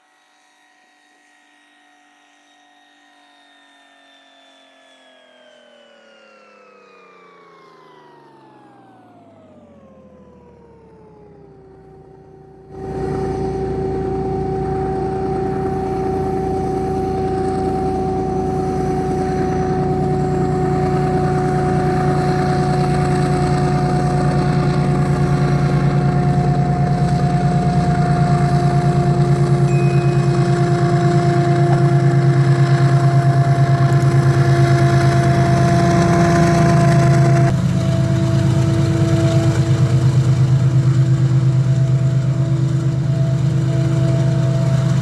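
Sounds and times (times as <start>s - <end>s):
faint whine falling in pitch: 5.5s - 45.0s
diesel locomotive engine rumbling: 12.6s - 45.0s.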